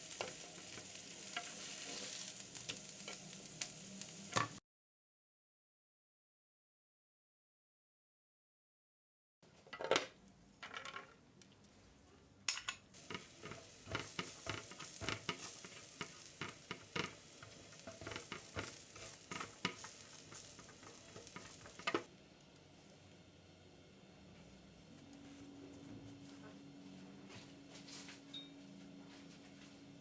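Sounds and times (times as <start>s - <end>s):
patties sizzling in a grill pan: 0.0s - 4.6s, 13.0s - 25.4s.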